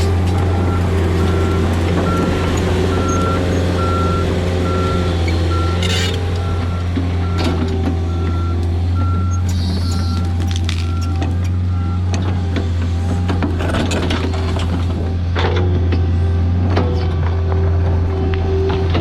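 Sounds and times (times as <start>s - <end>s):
diesel engine running: 0.0s - 19.0s
travel alarm beeping: 0.4s - 12.1s.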